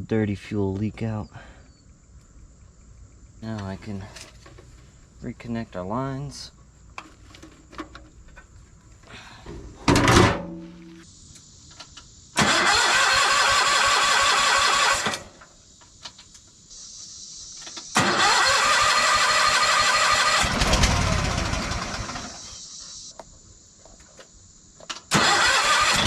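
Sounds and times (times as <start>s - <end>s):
engine cranking with electric starter: 12.4s - 15.3s, 17.9s - 22.7s, 25.1s - 26.0s.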